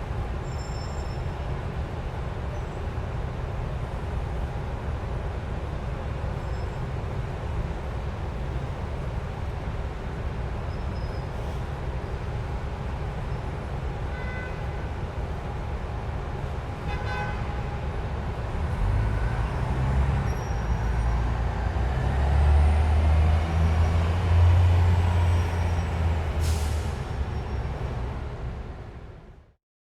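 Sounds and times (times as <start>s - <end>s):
heavy vehicle engine rumble: 0.0s - 16.8s, 17.8s - 29.4s
street traffic: 0.0s - 29.5s
air brake hiss: 26.4s - 27.3s.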